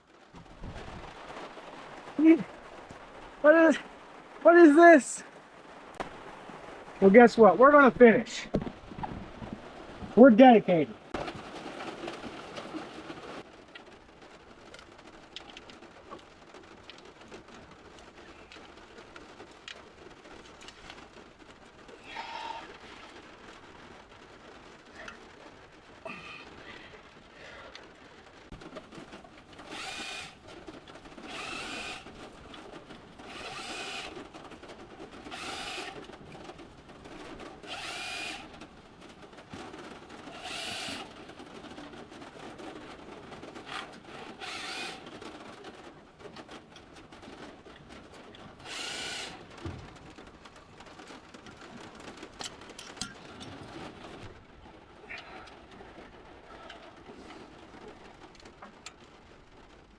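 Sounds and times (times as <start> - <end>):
power tool bursts: 29.7 - 30.4, 31.3 - 32.1, 33.3 - 34.2, 35.3 - 36.0, 37.6 - 38.5, 40.3 - 41.1, 43.7 - 45.1, 48.6 - 49.4.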